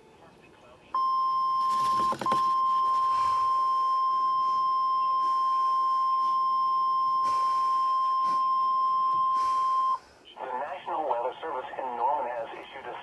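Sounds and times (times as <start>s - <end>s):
steady high alarm beep: 1.0s - 10.1s.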